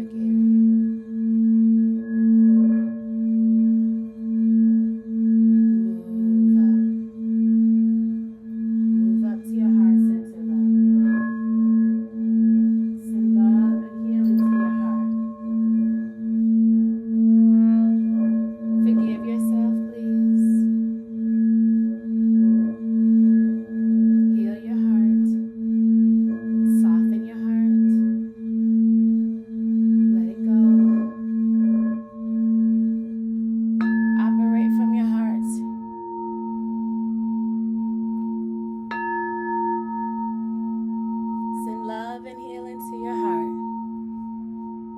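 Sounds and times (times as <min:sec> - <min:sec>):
higher singing bowls struck: 0:00.0 - 0:44.9
low singing bowl ringing: 0:00.0 - 0:44.9.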